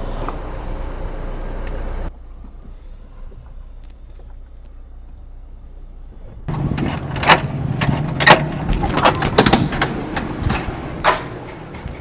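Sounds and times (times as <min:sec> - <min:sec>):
vehicle engine rumble: 0:00.0 - 0:12.0
sharp knocks and clatters: 0:06.5 - 0:12.0.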